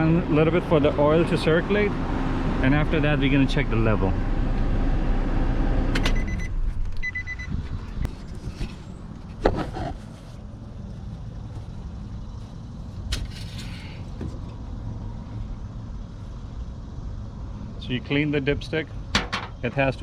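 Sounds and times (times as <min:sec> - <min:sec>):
short electronic beeps: 0:06.2 - 0:07.6.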